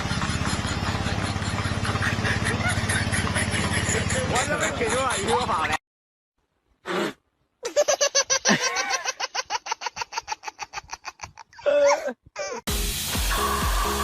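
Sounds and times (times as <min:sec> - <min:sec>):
person laughing hard: 0:01.7 - 0:05.6, 0:07.7 - 0:12.7.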